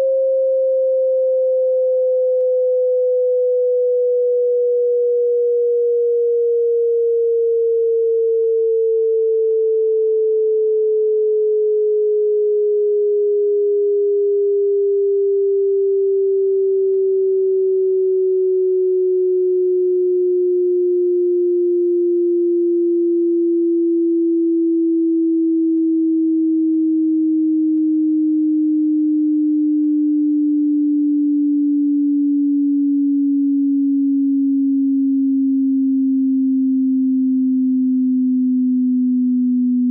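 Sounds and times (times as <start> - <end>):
descending sine tone sweep: 0.0 - 39.9.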